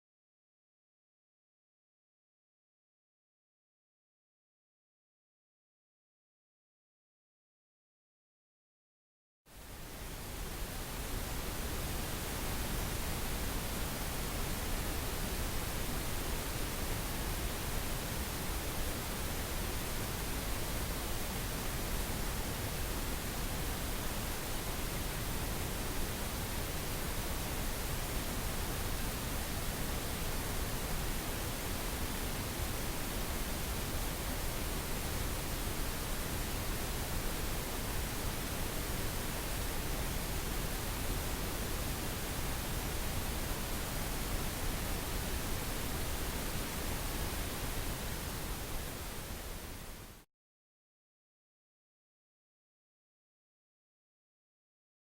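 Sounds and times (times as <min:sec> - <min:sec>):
pink noise hiss: 0:09.5 - 0:50.3.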